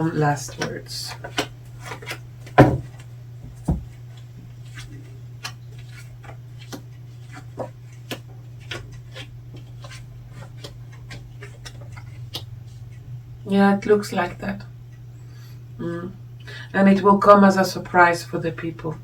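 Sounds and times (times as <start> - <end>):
steady low hum: 0.0 - 19.0
knock on table: 2.6 - 2.9
cards clicking and tapping: 4.7 - 12.5.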